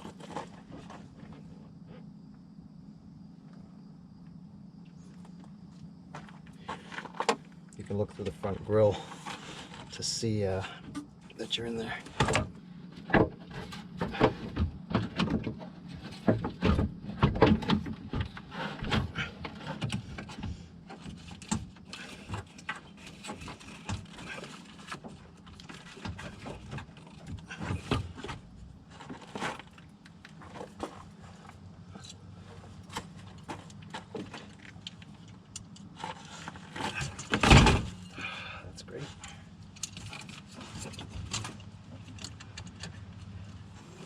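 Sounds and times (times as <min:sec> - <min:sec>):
steady low hum: 0:00.0 - 0:44.0
metal parts clicking and scraping: 0:39.1 - 0:44.0.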